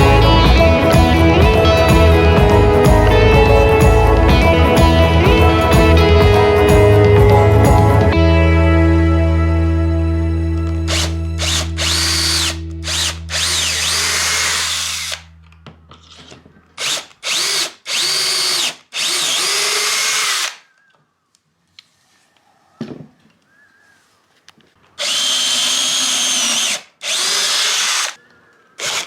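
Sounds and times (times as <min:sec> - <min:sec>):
background music: 0:00.0 - 0:15.4
electric drill motor whine: 0:10.7 - 0:15.4, 0:16.8 - 0:20.7, 0:25.0 - 0:28.2, 0:28.8 - 0:29.0.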